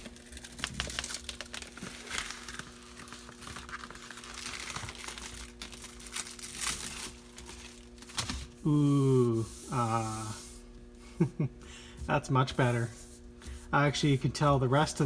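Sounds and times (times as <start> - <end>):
plastic wrapping peeled and torn: 0.0 - 8.6.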